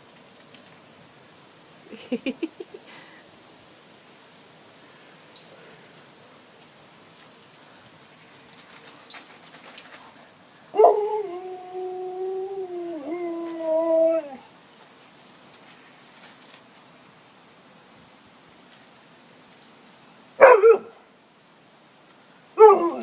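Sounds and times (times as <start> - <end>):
dog howling: 10.8 - 14.5, 22.6 - 23.0.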